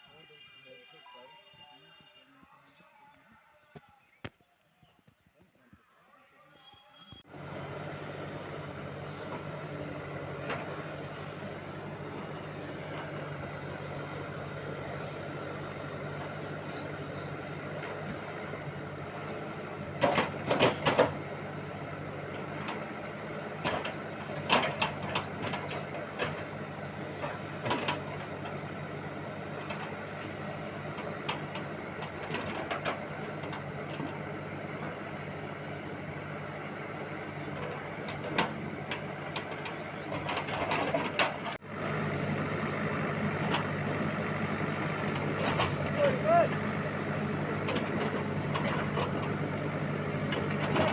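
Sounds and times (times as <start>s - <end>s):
bulldozer diesel engine running: 6.6s - 50.9s
metallic clanks and knocks: 23.6s - 26.5s.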